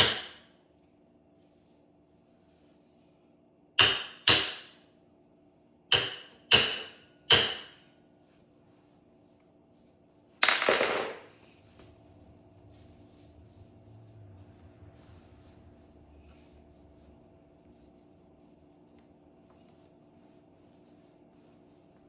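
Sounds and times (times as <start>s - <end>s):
hammer striking metal: 3.8s - 4.8s, 5.9s - 7.8s.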